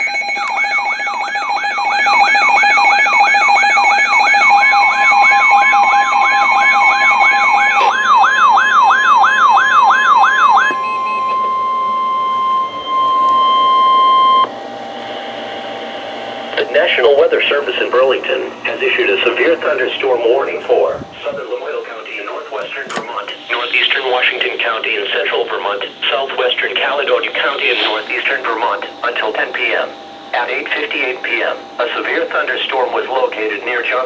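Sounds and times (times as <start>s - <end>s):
electronic siren wailing: 0.0s - 14.5s
steady warning alarm tone: 0.0s - 34.0s.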